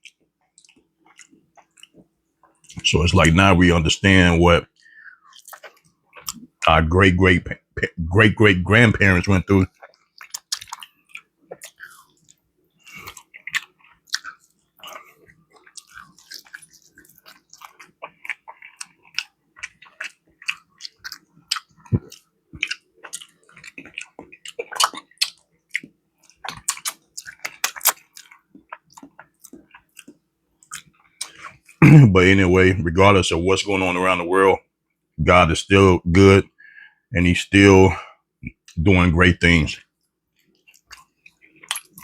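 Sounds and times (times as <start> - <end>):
person chewing food: 0.0 - 2.8, 4.7 - 6.7, 9.2 - 31.9, 39.8 - 42.0.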